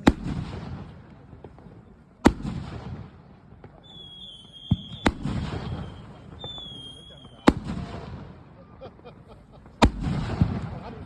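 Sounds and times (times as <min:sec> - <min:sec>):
firework bangs: 0:00.0 - 0:11.0
firework whistle: 0:03.8 - 0:07.7.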